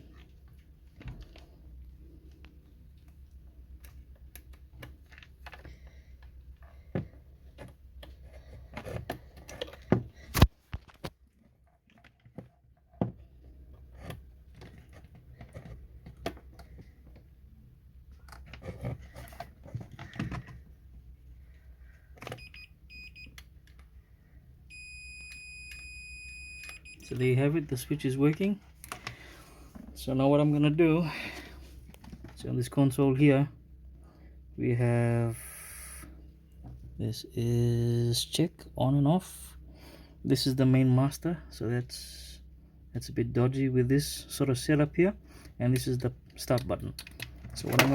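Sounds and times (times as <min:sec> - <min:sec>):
multimeter beeps: 0:22.3 - 0:23.4, 0:24.7 - 0:27.3.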